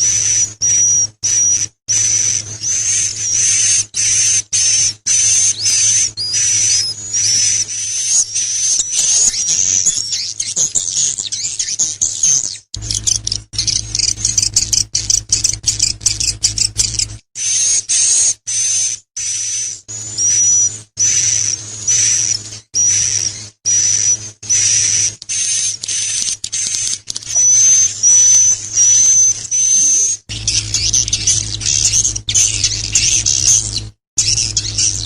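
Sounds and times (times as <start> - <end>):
high-pitched bird song: 0.0 - 35.0
low hum: 30.3 - 35.0.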